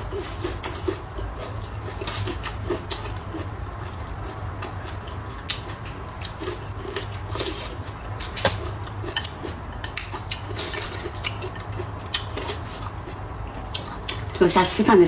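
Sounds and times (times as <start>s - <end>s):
chewing and mouth noises: 0.0s - 14.4s
low steady hum: 0.0s - 15.0s
chopsticks clicking on dishes: 9.0s - 12.2s.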